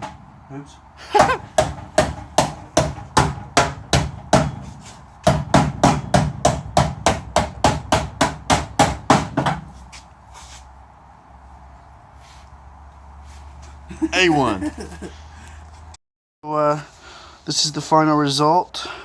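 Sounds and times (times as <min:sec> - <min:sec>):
hammer on sheet steel: 0:01.2 - 0:09.7.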